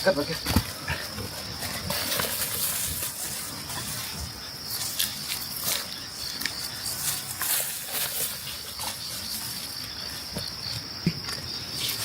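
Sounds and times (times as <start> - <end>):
rustling: 1.6 - 10.9.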